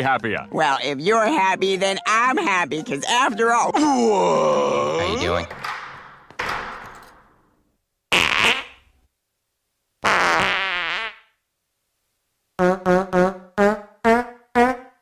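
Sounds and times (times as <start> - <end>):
cartoon fart sounds: 8.1 - 8.9, 10.0 - 11.4, 12.6 - 15.0.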